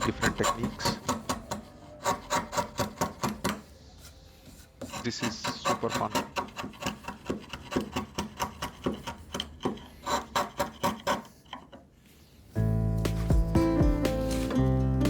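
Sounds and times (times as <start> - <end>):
chisel scraping wood: 0.0 - 12.2
acoustic guitar music: 12.6 - 15.0.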